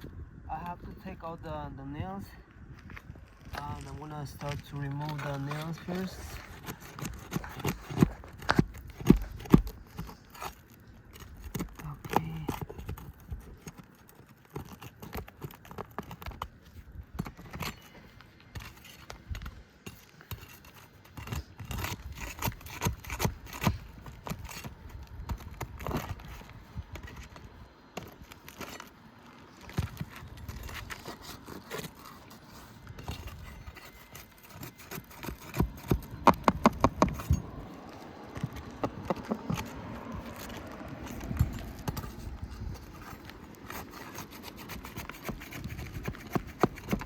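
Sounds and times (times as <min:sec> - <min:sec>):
nails pried out of shingles: 0:04.4 - 0:47.0.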